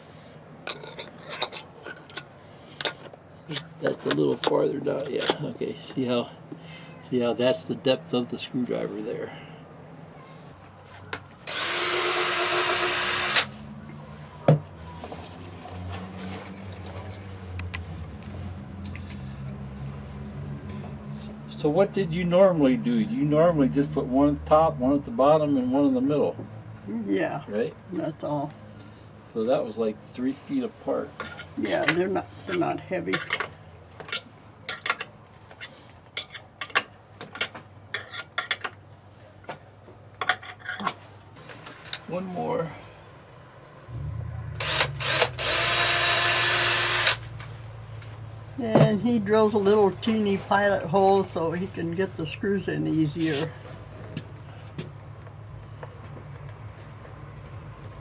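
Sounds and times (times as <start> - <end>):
power drill drilling: 11.4 - 13.6, 44.6 - 47.2.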